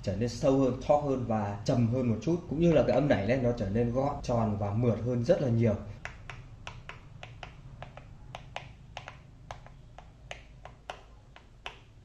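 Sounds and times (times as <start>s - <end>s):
typing on mechanical keyboard: 6.0s - 12.0s.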